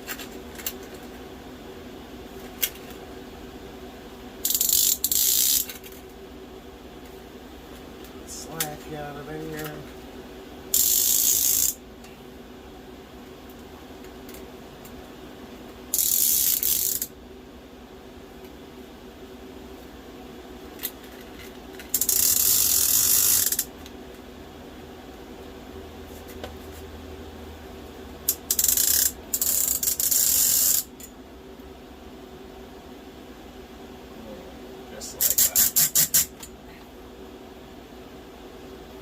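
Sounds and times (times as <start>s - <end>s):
rope ratchet clicking: 4.4s - 5.8s, 10.7s - 11.8s, 15.9s - 17.1s, 21.9s - 23.7s, 28.3s - 31.0s, 35.2s - 36.5s.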